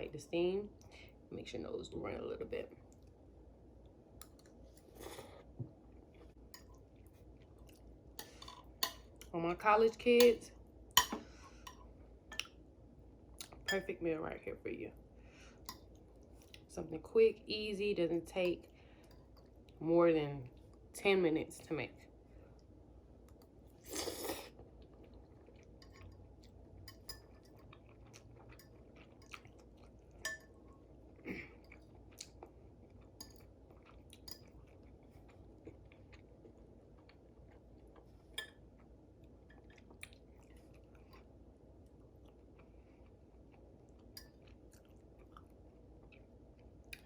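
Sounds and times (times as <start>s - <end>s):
person chewing noodles: 23.3s - 47.0s.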